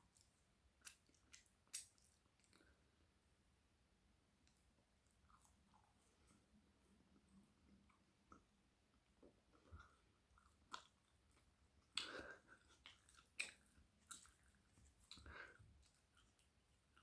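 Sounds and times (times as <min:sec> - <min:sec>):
chewing and biting flatbread: 0:09.5 - 0:17.0.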